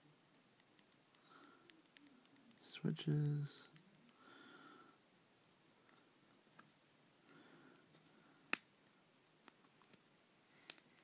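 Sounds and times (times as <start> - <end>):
small clicks and light taps: 0.3 - 4.2.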